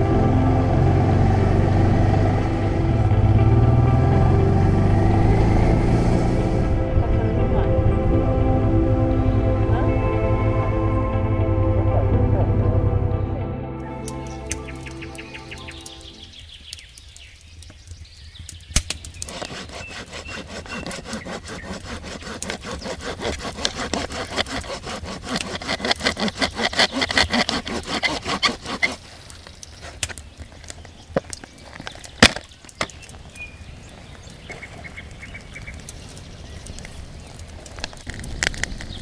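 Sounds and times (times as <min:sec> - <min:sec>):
sharp crack: 0:18.5 - 0:19.8, 0:31.1 - 0:33.2
hand saw cutting wood: 0:19.1 - 0:30.2.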